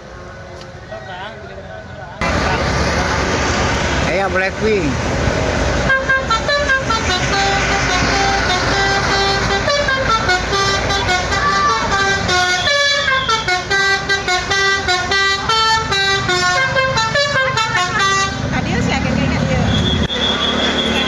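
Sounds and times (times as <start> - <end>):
bus and road rumble: 0.0 - 21.0
bus horn playing a tune: 5.8 - 18.5.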